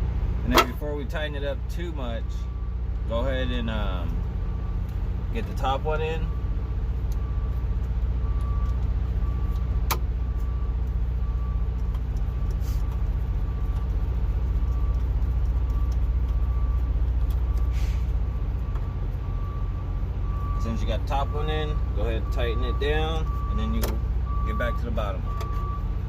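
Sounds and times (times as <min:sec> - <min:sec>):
low engine drone: 0:00.0 - 0:26.0.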